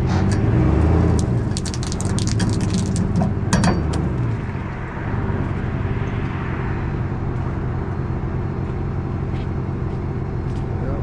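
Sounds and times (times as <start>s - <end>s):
vehicle engine running: 0.0s - 11.0s
sharp cracks: 0.3s - 4.0s.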